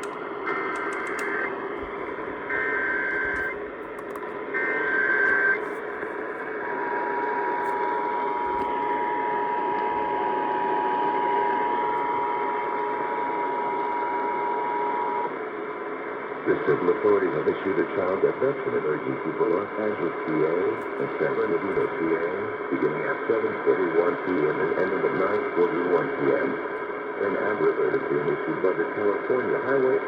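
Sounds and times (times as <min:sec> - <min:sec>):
radio static and hum: 0:00.0 - 0:30.0
data tone bursts: 0:00.4 - 0:03.6.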